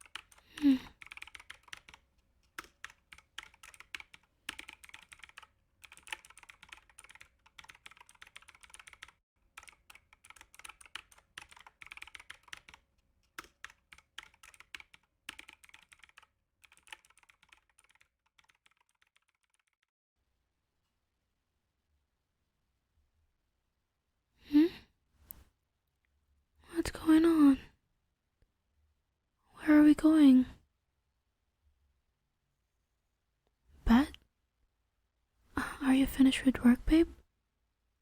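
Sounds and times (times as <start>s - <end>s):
typing on a computer keyboard: 0.0s - 19.9s.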